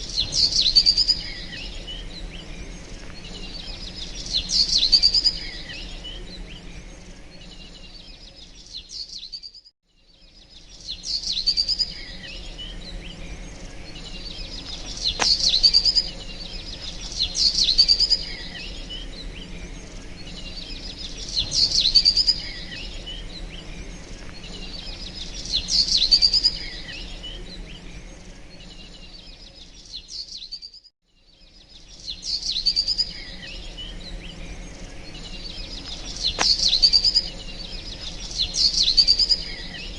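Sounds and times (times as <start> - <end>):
small birds chirping: 0.0 - 39.9
low background hum: 10.1 - 29.8, 31.4 - 39.9.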